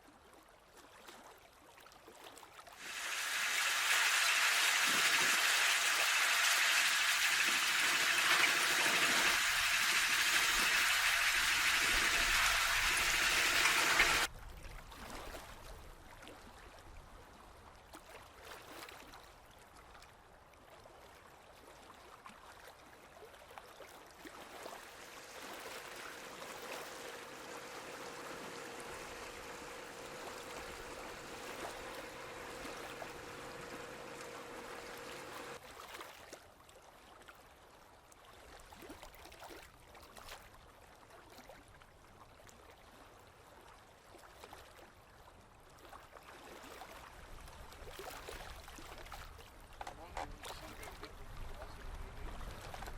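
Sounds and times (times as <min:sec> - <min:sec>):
faint steady hum: 0:02.8 - 0:14.3, 0:24.7 - 0:35.6
boat engine running: 0:02.9 - 0:14.3, 0:24.7 - 0:35.6
water trickling and gurgling: 0:24.7 - 0:35.6.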